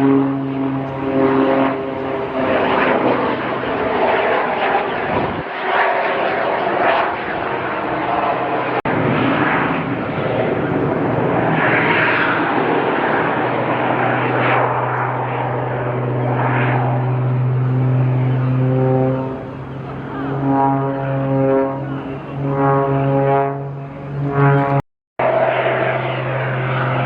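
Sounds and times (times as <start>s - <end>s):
aircraft engine noise: 0.0s - 27.0s
music with low brassy tones: 17.8s - 24.8s.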